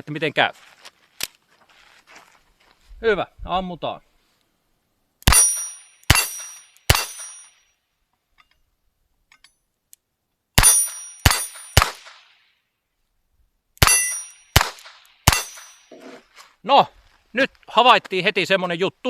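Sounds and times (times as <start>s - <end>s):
metallic ring of steel targets: 5.3s - 7.7s, 10.6s - 12.3s, 13.8s - 15.9s.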